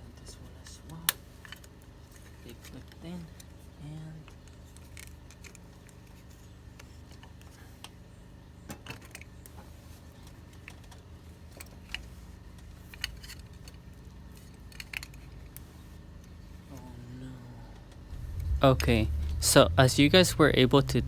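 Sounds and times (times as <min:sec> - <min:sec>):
steady low hum: 0:12.0 - 0:21.0.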